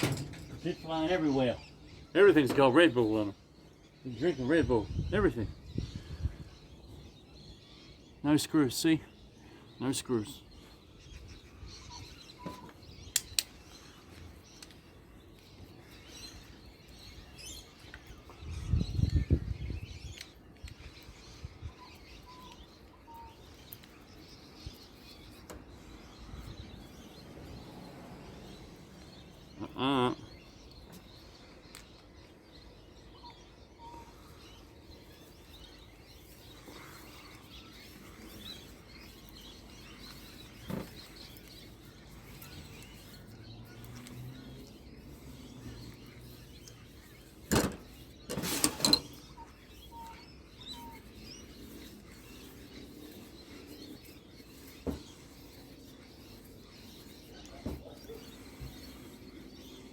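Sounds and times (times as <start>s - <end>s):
birds chirping: 0.0s - 59.9s
sharp clicks: 13.1s - 13.6s.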